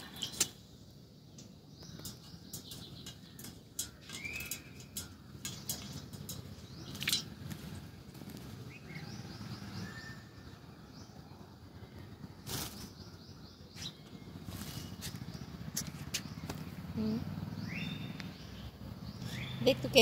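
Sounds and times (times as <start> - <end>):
clicks and patters in water: 1.4 - 7.7.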